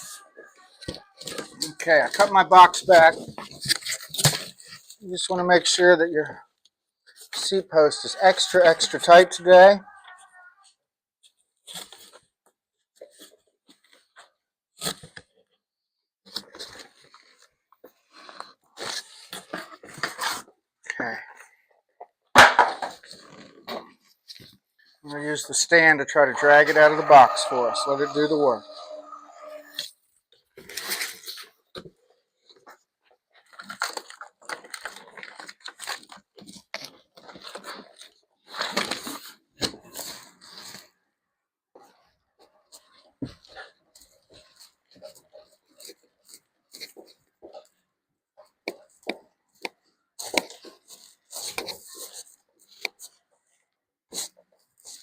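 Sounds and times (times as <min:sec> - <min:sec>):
cardboard scraping and crinkling: 0:02.9 - 0:05.0, 0:30.6 - 0:32.8, 0:33.4 - 0:41.0, 0:48.4 - 0:53.2
cardboard scraping and tearing: 0:30.6 - 0:31.6.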